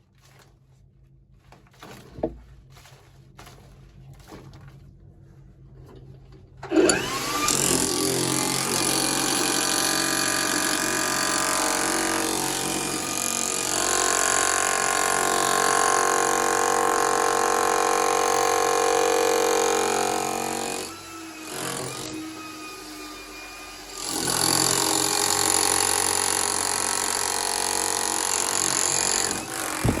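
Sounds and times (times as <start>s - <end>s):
jackhammer hammering into rock: 6.7s - 22.3s, 23.9s - 30.0s.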